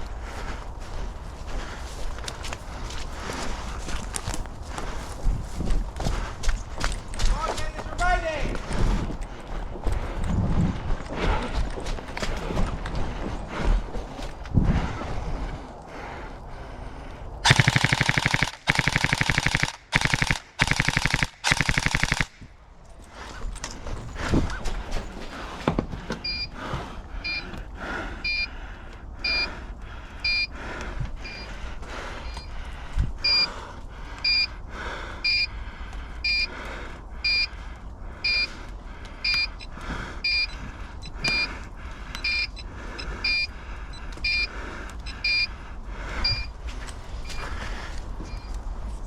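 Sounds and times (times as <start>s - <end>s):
high two-pitch beeps: 26.3s - 26.5s, 31.2s - 31.5s, 38.3s - 38.5s, 39.3s - 41.5s, 42.2s - 42.6s, 45.2s - 45.5s, 46.2s - 46.5s.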